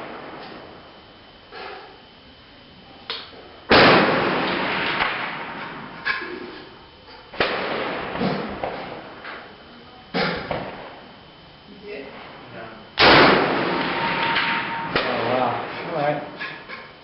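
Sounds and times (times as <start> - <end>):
distant gunshots: 3.7 - 5.6, 7.4 - 8.8, 13.0 - 15.8
loud rifle shots echoing: 3.7 - 5.9, 7.4 - 8.2, 13.0 - 15.8.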